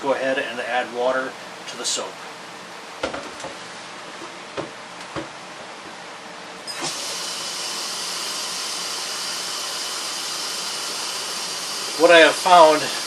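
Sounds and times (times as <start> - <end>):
water running into a tank: 6.7 - 13.0.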